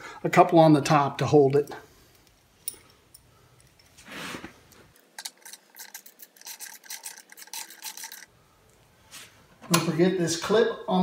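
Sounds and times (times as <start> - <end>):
screw clicking and scraping metal: 4.9 - 8.3.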